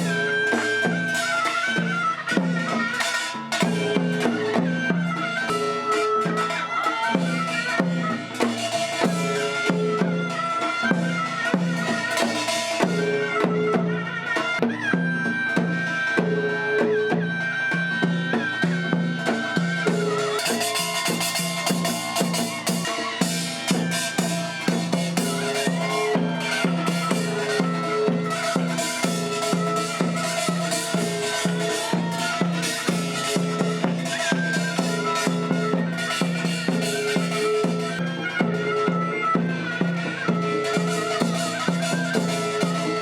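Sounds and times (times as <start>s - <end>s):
drums steady rhythm: 0.0s - 5.6s, 18.0s - 43.0s.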